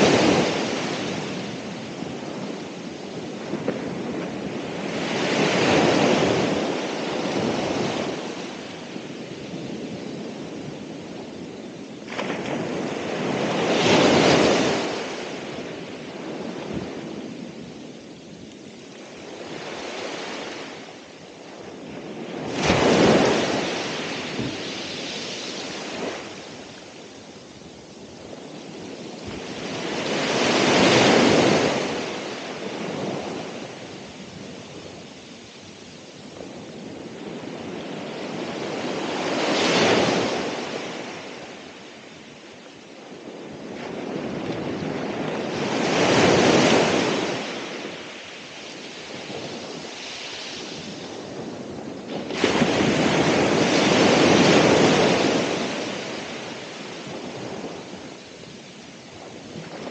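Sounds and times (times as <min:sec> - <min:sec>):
ocean waves breaking: 0:19.0 - 0:27.4, 0:28.2 - 0:34.9, 0:43.6 - 0:59.9.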